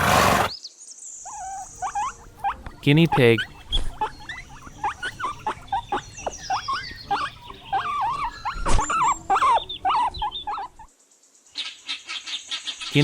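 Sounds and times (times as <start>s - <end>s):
guinea pig squeaking: 1.2s - 10.9s.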